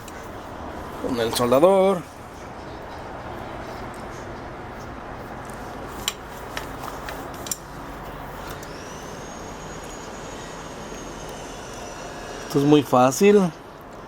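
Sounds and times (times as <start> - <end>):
steady background hum: 0.0 - 14.0
faint high whine: 8.1 - 13.6.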